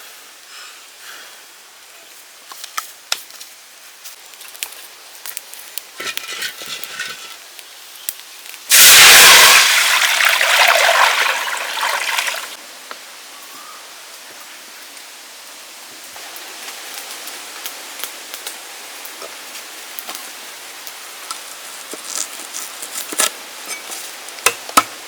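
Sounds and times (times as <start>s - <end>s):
water gushing out: 8.7s - 12.6s.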